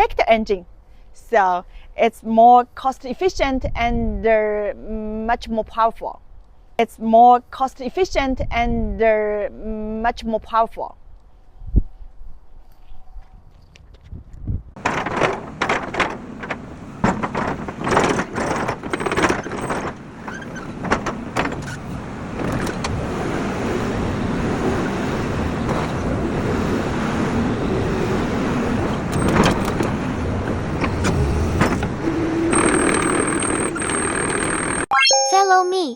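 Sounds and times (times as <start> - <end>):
sharp knocks and clanks: 14.8 - 21.8
high steady whine: 32.5 - 34.9.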